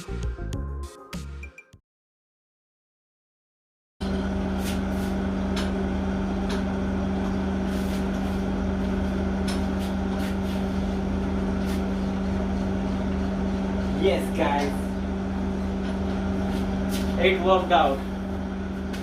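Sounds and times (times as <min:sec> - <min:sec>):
steady mechanical hum: 0:04.0 - 0:19.0.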